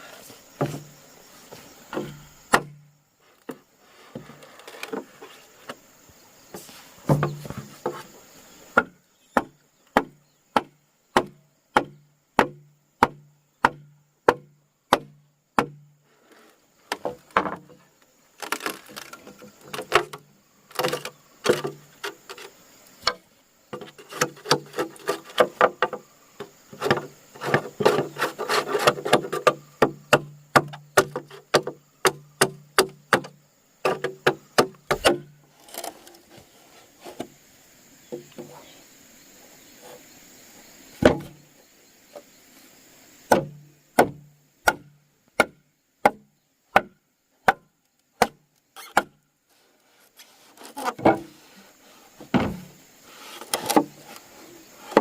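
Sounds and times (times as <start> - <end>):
hand tool striking wood: 1.5 - 2.9, 6.6 - 8.1, 8.7 - 15.9, 16.9 - 17.8, 18.4 - 36.2, 41.0 - 41.4, 43.3 - 49.2, 52.2 - 52.7, 54.8 - 55.0.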